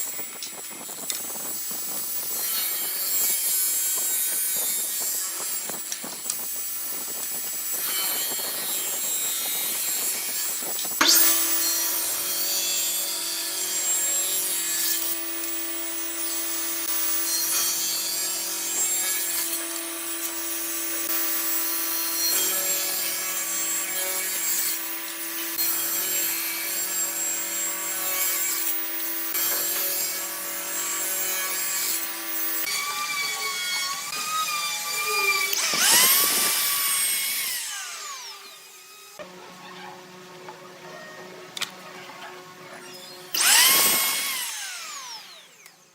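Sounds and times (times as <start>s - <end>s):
lathe motor hum: 42.3s - 45.6s.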